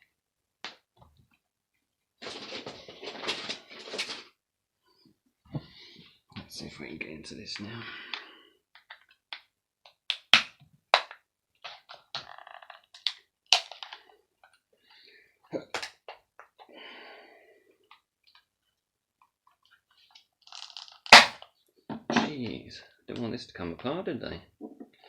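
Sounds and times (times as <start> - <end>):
plastic scraping and creaking: 2.2 - 4.3.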